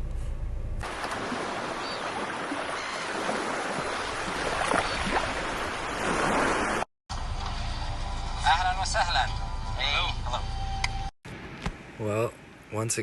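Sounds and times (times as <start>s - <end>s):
ocean surf washing on shore: 0.8s - 6.8s.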